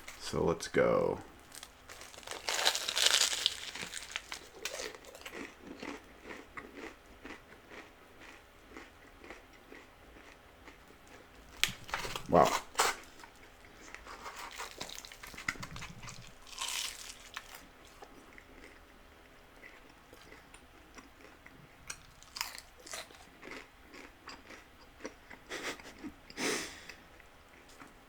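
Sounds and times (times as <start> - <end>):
crunching fried tortilla: 1.3 - 18.8, 21.2 - 24.6
chewing: 1.4 - 18.9, 19.6 - 28.0.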